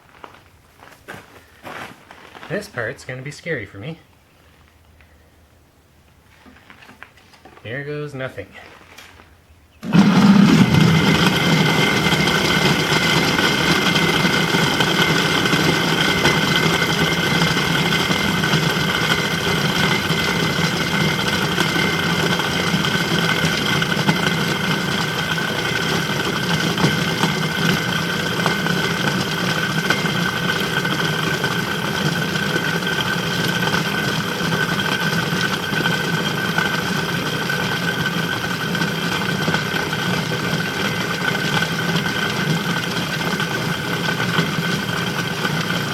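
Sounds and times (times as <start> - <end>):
electric motor humming and whining: 9.8 - 45.9.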